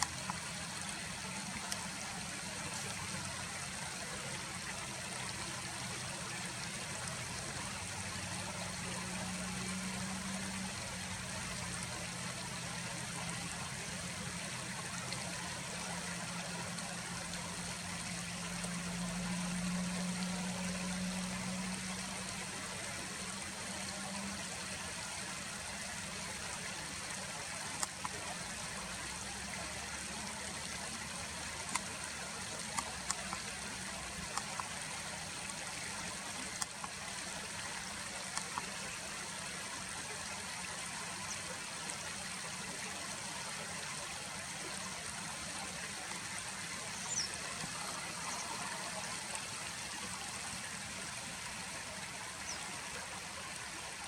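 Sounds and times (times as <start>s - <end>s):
stream water flowing: 0.0s - 54.0s.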